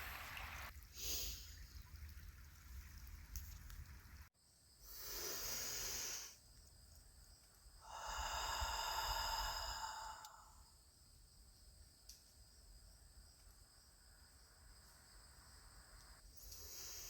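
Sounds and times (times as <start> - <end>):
person breathing deeply: 4.8 - 6.4, 7.8 - 10.7.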